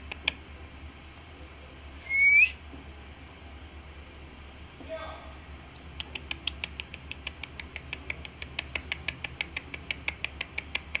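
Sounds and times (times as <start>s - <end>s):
parrot clicking rapidly: 0.0s - 0.4s, 5.8s - 11.0s.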